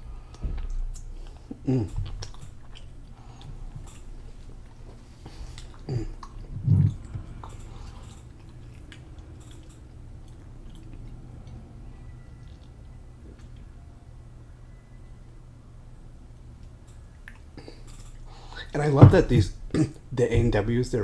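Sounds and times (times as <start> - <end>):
low mouth sounds: 0.0 - 3.7, 5.3 - 8.2
chewing food: 0.0 - 13.9, 16.3 - 20.2
steady low hum: 0.0 - 21.0
wet mouth clicks: 0.3 - 11.1.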